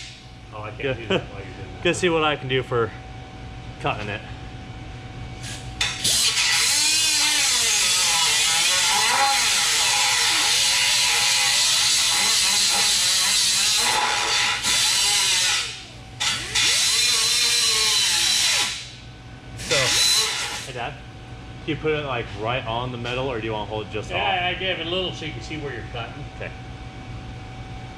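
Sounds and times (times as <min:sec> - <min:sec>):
power cutting tool cutting steel: 0:05.4 - 0:19.0, 0:19.6 - 0:20.8.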